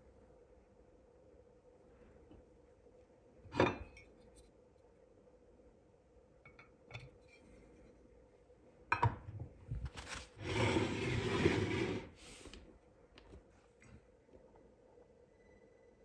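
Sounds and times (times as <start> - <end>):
packaging rustling or scraping: 9.8 - 11.3.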